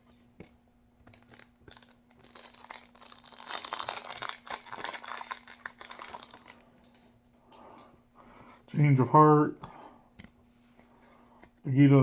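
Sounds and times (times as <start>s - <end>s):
foil wrapper crinkling and tearing: 1.1s - 6.7s.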